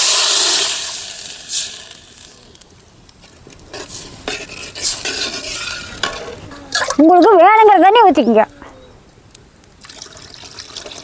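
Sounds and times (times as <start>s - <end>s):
ladle scraping in cooking pot: 3.6s - 7.0s.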